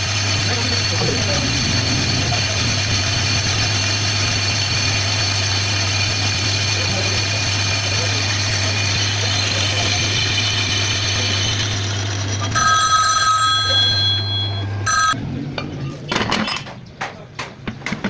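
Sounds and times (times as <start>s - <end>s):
lathe motor humming: 0.0s - 15.2s
high ringing tones: 11.5s - 15.2s
knocks and clattering: 15.6s - 18.0s.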